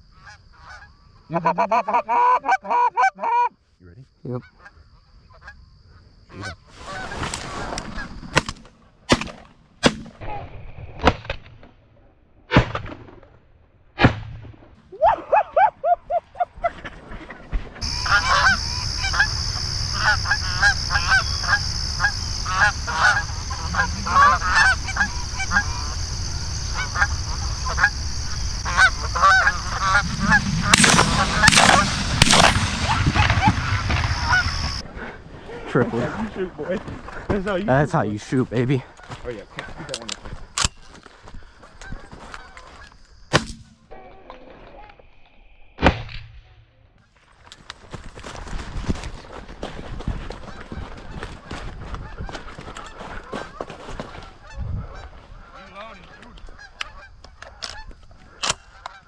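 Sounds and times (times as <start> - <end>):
geese honking: 17.8 - 34.8
shotgun shots: 17.8 - 34.8.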